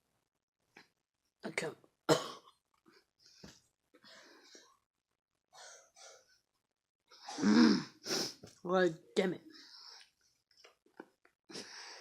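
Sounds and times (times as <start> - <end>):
person coughing or groaning: 2.1 - 2.5.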